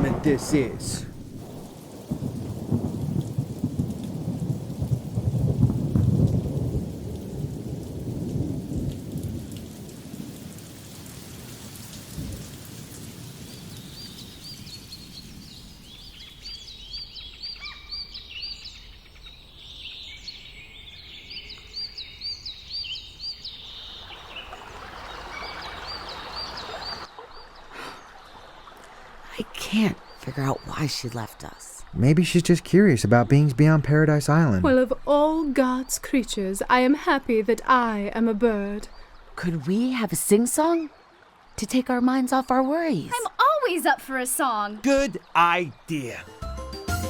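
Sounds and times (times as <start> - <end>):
thunder rumbling: 0.0 - 10.6
steady rain: 0.0 - 17.5, 23.5 - 46.3
small birds chirping: 13.3 - 46.3.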